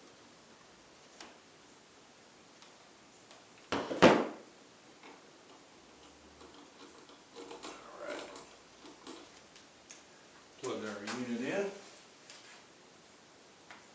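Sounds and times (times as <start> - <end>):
tools clicking and rustling: 5.0 - 9.5.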